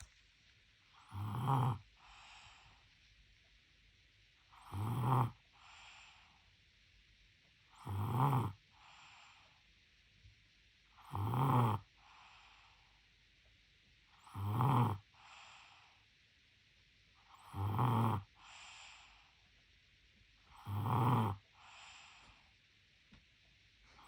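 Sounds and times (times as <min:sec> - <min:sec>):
baby snoring: 0:01.0 - 0:01.8, 0:17.4 - 0:18.3, 0:20.6 - 0:21.4
soft airy breath: 0:01.8 - 0:03.5, 0:05.4 - 0:07.0, 0:08.6 - 0:09.9, 0:11.9 - 0:13.2, 0:15.0 - 0:16.5, 0:18.3 - 0:20.3, 0:21.4 - 0:23.0.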